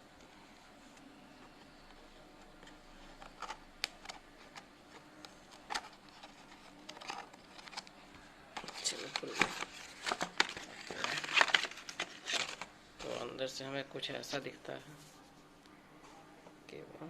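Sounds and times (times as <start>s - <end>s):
packaging clicks and taps: 8.6s - 12.7s
wrapping crinkling: 8.6s - 13.2s.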